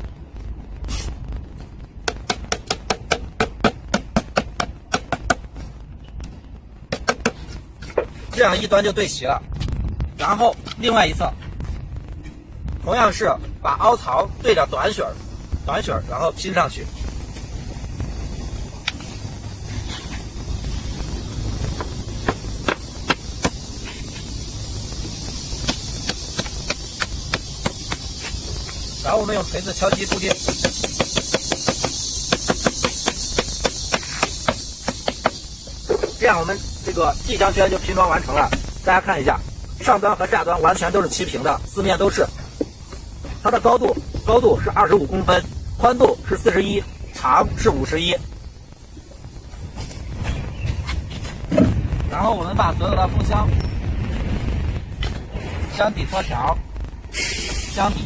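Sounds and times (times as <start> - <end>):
low steady rumble: 0.0 - 58.0.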